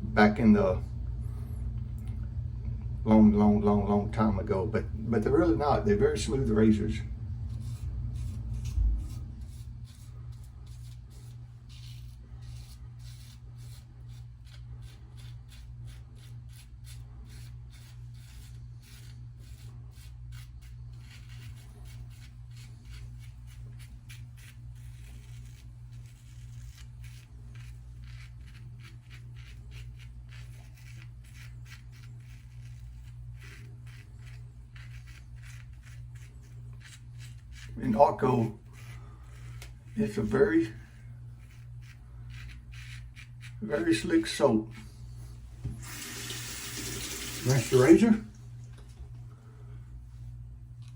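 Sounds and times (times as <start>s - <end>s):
low hum: 0.0s - 22.8s
razor scraping stubble: 3.7s - 48.1s.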